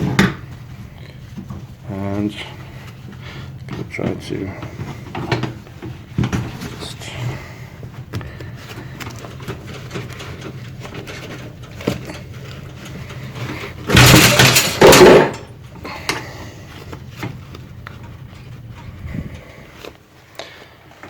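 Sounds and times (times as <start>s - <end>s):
loud metallic clatter: 13.9s - 15.5s.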